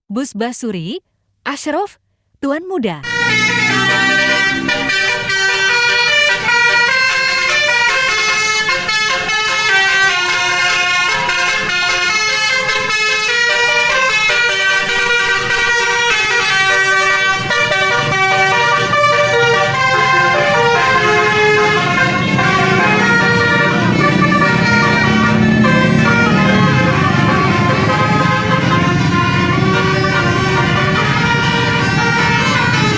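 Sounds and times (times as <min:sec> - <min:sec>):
multi-tone bus air horn melody: 0:03.0 - 0:32.9.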